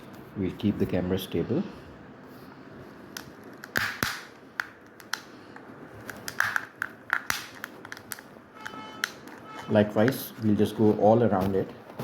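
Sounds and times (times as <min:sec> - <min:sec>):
plastic clips clicking: 0:06.0 - 0:10.6.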